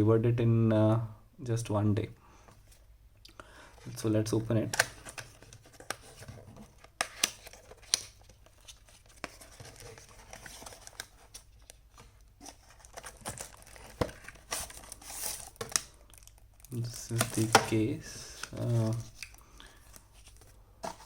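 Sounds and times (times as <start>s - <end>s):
packaging rustling: 4.6s - 21.0s
cardboard box tearing and crinkling: 12.4s - 16.0s.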